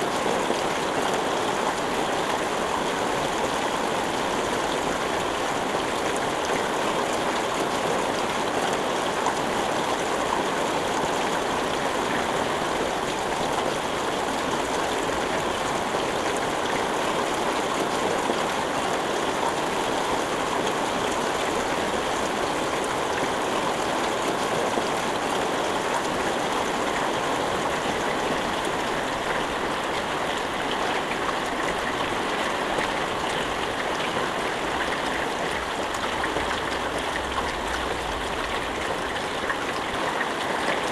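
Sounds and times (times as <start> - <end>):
steady rain falling: 0.0 - 40.9.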